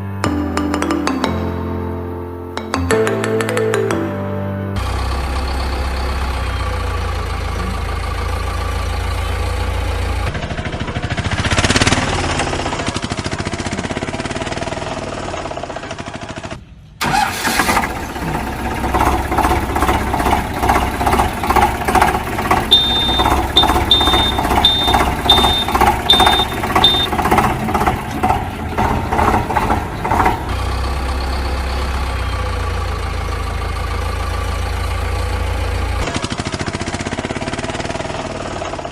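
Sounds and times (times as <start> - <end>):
engine humming and chugging: 4.8 - 38.9
short high beeps: 22.7 - 27.2.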